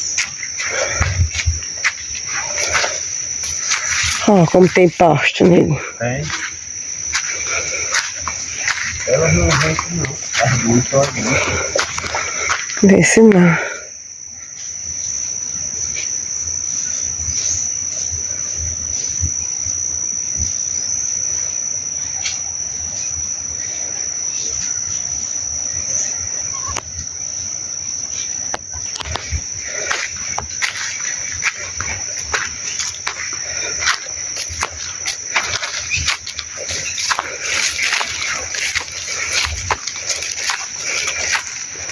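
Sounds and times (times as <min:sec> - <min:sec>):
high-pitched insect trill: 0:00.0 - 0:41.9.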